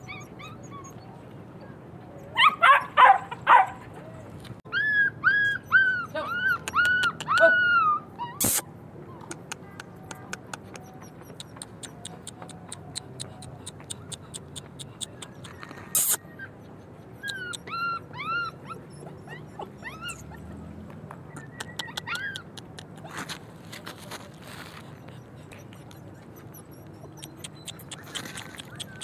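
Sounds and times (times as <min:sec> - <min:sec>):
puppy whimpering: 0:00.0 - 0:03.0, 0:03.9 - 0:23.3, 0:24.5 - 0:29.0
sharp clicks: 0:09.2 - 0:16.2, 0:26.8 - 0:29.0.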